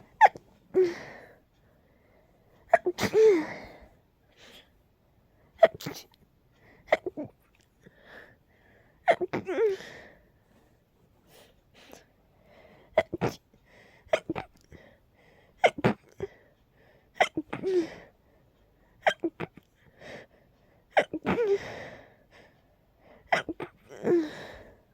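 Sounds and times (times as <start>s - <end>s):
person sneezing: 2.7s - 3.6s.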